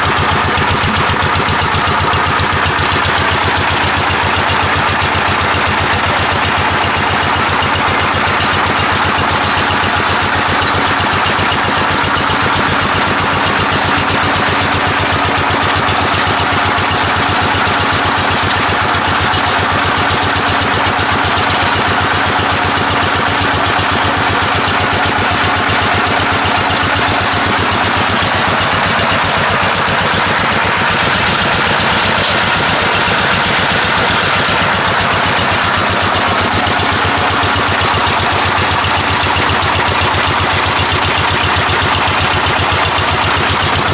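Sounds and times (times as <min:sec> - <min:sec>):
diesel engine running: 0:00.0 - 0:43.9.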